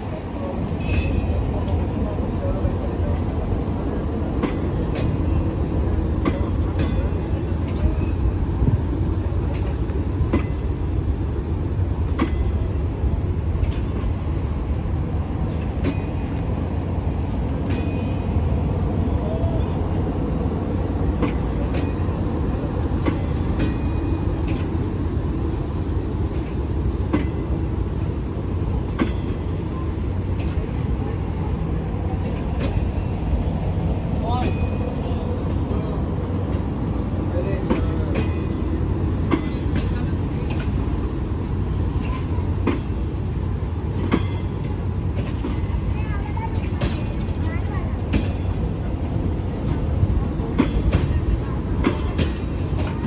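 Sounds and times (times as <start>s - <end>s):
train rumbling on rails: 0.0s - 53.0s.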